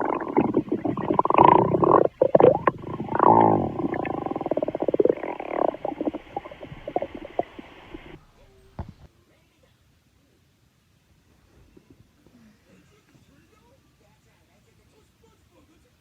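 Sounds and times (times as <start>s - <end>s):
stomach growling: 0.0s - 8.2s.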